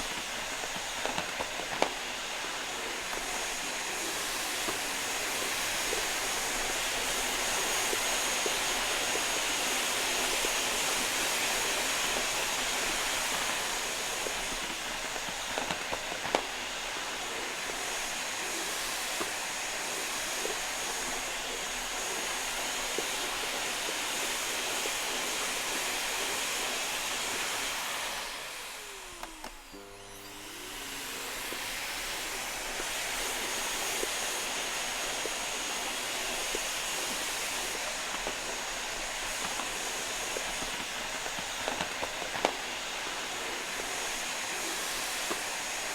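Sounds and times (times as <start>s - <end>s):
vacuum cleaner running: 0.0s - 45.9s.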